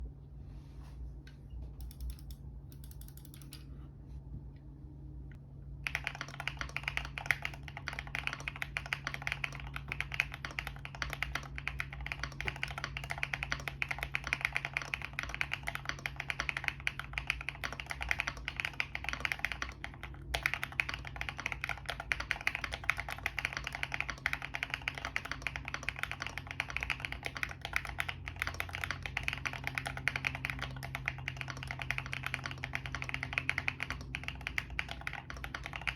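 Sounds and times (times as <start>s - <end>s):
mechanical keyboard typing: 1.8s - 3.6s, 5.8s - 35.9s.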